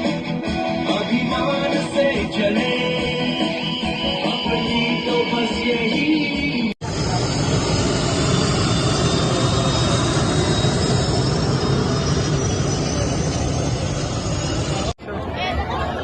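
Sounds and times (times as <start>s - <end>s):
music: 0.0s - 6.8s
jet aircraft flying over: 6.8s - 15.0s.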